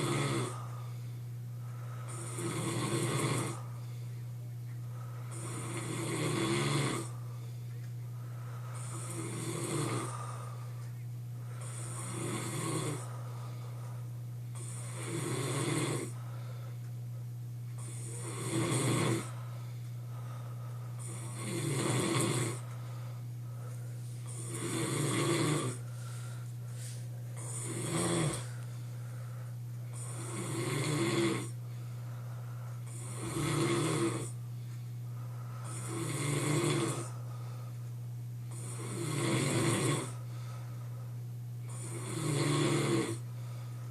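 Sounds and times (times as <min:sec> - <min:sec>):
man snoring: 0:00.0 - 0:01.1, 0:01.8 - 0:03.8, 0:05.2 - 0:07.2, 0:08.5 - 0:10.7, 0:11.4 - 0:13.6, 0:14.5 - 0:16.5, 0:17.8 - 0:19.6, 0:20.2 - 0:22.7, 0:24.2 - 0:29.3, 0:29.9 - 0:31.6, 0:32.8 - 0:34.4, 0:35.5 - 0:37.5, 0:38.5 - 0:40.4, 0:41.6 - 0:43.4.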